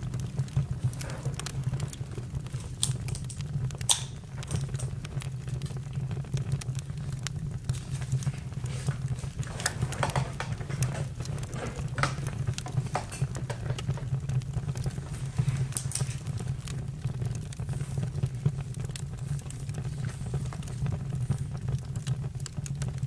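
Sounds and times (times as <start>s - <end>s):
campfire crackling: 0.0s - 23.0s.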